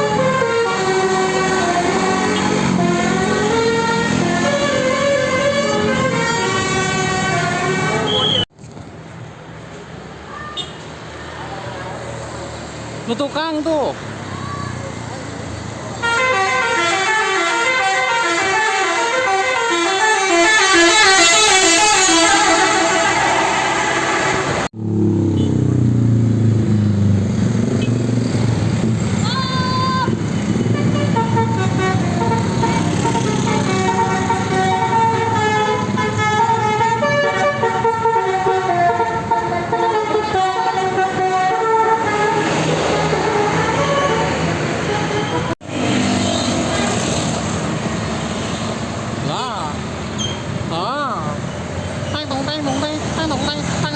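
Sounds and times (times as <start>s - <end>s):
multi-trumpet bus air horn tune: 0.0s - 8.5s, 16.0s - 24.7s, 30.6s - 45.6s
rushing noise: 21.7s - 25.3s.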